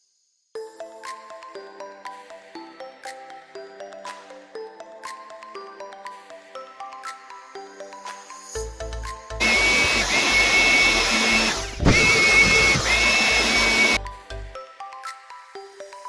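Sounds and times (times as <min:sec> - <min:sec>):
background music: 0:00.6 - 0:16.0
small motor whining with air rush: 0:09.4 - 0:14.0.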